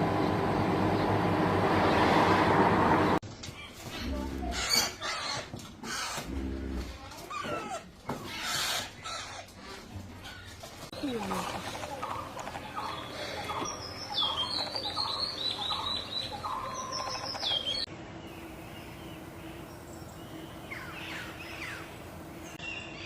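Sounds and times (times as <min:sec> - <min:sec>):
bird calls: 0:07.3 - 0:23.0
steady low hum: 0:10.9 - 0:22.6.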